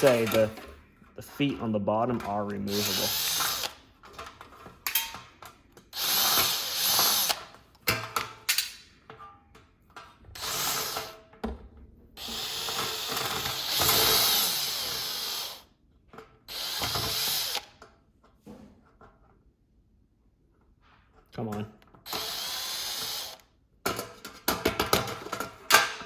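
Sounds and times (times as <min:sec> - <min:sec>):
electric drill spinning: 0:02.6 - 0:03.9, 0:05.9 - 0:07.6, 0:10.4 - 0:11.2, 0:12.2 - 0:15.7, 0:16.5 - 0:17.8, 0:22.1 - 0:23.5.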